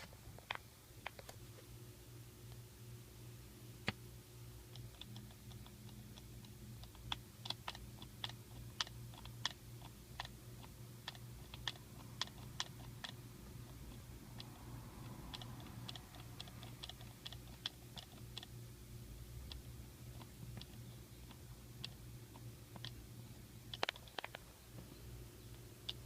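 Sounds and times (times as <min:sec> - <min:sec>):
steady low hum: 0:00.0 - 0:26.0
light irregular clicking: 0:23.7 - 0:24.5.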